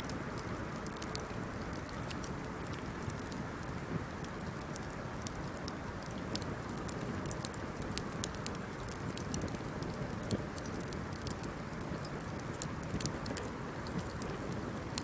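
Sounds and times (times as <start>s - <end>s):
burning wood crackling: 0.0s - 15.0s
campfire flames hissing: 0.0s - 15.0s.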